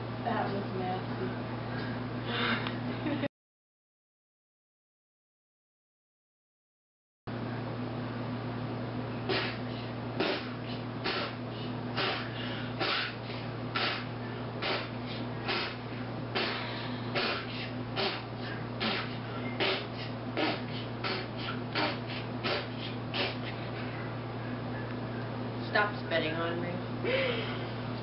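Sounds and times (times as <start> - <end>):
steady low hum: 0.0 - 3.3, 7.3 - 28.0
beatboxing: 9.3 - 13.2, 13.8 - 15.8, 16.4 - 23.6.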